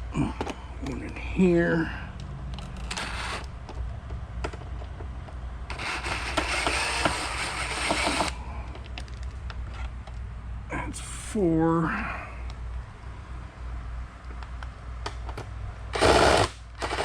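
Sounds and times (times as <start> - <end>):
low hum: 0.0 - 17.0
screwdriver scraping screw: 2.8 - 3.5, 5.7 - 8.4, 16.0 - 17.0.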